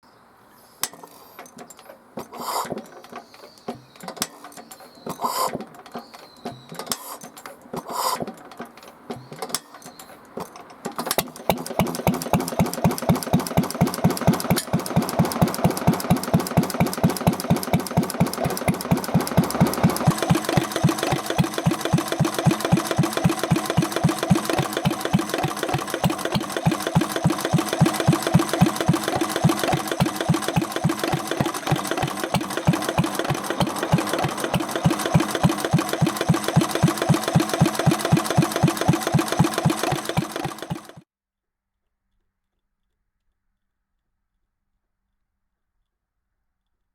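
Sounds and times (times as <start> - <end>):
engine knocks and clicks: 0.8 - 41.0
stationary engine running: 11.1 - 41.0.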